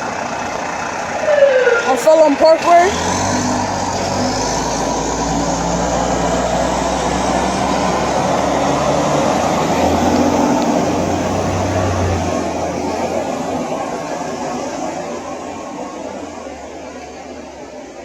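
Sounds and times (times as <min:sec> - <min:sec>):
fire truck engine running: 0:00.0 - 0:18.0.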